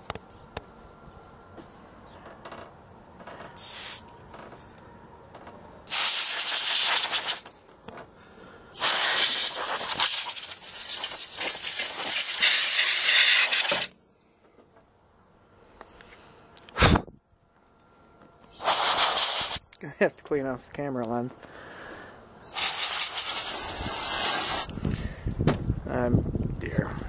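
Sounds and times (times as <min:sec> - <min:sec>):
compressed air duster spraying: 0:03.6 - 0:04.0, 0:05.9 - 0:07.5, 0:08.8 - 0:13.9, 0:18.4 - 0:19.6, 0:22.4 - 0:24.7.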